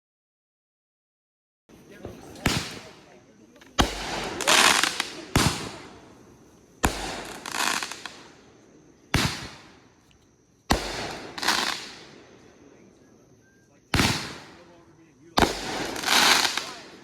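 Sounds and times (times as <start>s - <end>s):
fireworks banging: 1.7s - 17.0s.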